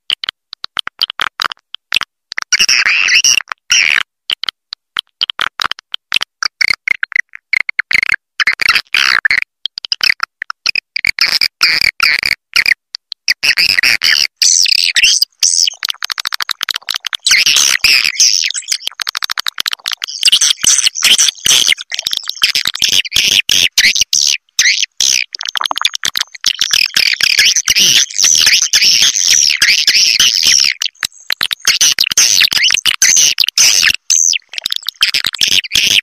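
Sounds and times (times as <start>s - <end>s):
recorded swiftlets twittering: 14.4s - 36.0s.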